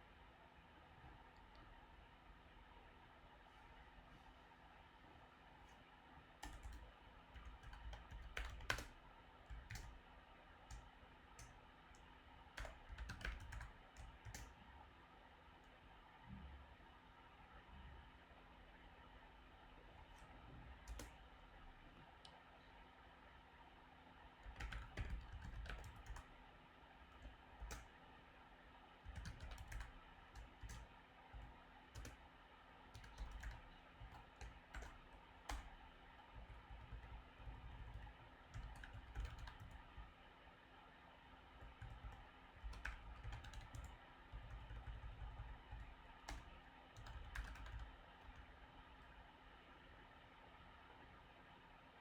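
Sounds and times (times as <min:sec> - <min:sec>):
typing on computer keyboard: 0:06.4 - 0:10.0, 0:10.7 - 0:14.6, 0:20.7 - 0:21.2, 0:24.4 - 0:26.3, 0:27.1 - 0:27.9, 0:29.0 - 0:32.2, 0:32.9 - 0:40.2, 0:41.6 - 0:48.5.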